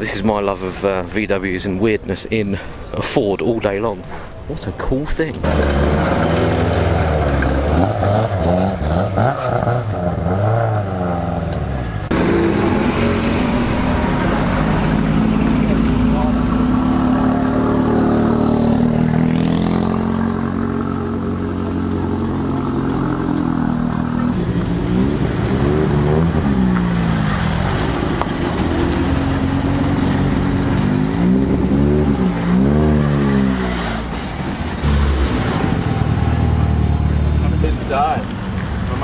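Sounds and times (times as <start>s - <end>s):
car engine revving: 5.3s - 39.0s.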